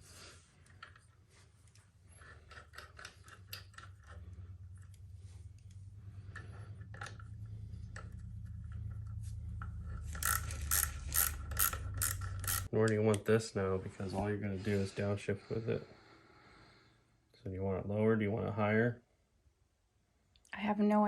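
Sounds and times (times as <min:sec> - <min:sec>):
low hum: 0:00.0 - 0:12.7
socket ratchet clicking: 0:10.1 - 0:12.7.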